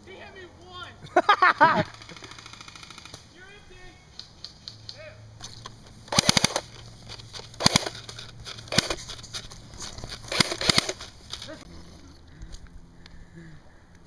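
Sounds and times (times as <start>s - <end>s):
airsoft guns firing: 1.8s - 3.3s, 6.1s - 6.8s, 7.5s - 9.3s, 10.2s - 11.5s.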